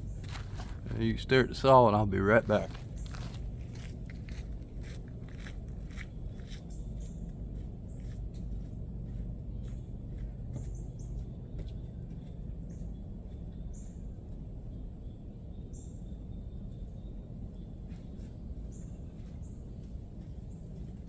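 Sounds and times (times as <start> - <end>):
low background rumble: 0.0 - 21.0
bird chirps: 2.3 - 3.9.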